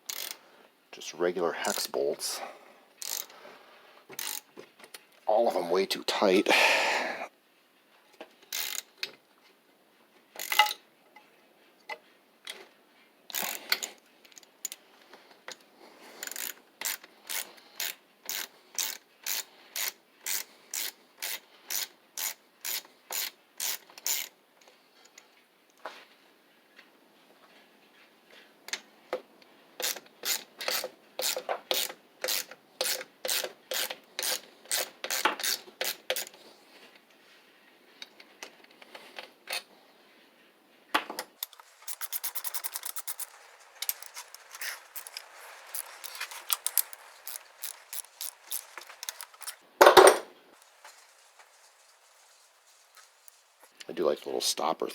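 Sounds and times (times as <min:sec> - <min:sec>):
socket ratchet clicking: 0:41.4 - 0:49.6.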